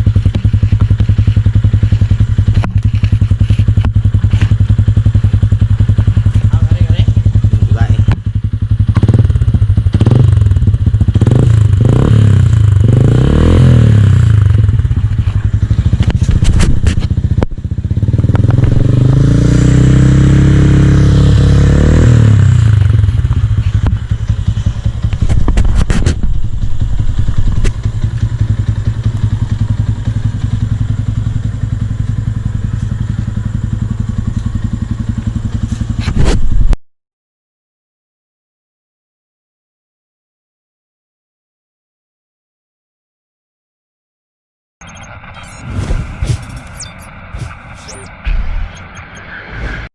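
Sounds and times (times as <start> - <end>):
motorcycle engine revving and idling: 0.0 - 36.8, 44.8 - 49.9.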